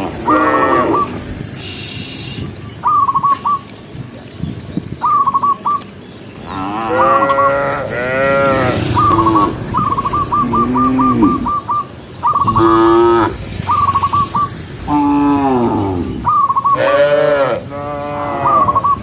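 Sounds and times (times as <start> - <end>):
cattle mooing: 0.0 - 1.2, 6.5 - 11.6, 12.4 - 13.9, 14.8 - 18.8
short high trilling call: 8.8 - 14.6.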